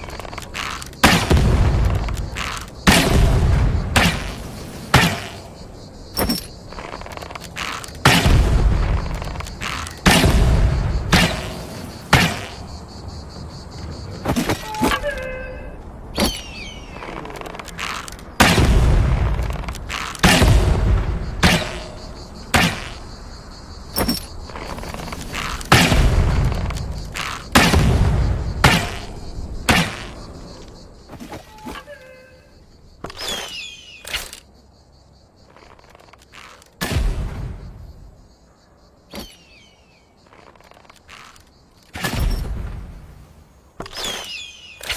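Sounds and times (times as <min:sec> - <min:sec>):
thin squeaky tones: 0:14.5 - 0:17.1, 0:31.4 - 0:34.3.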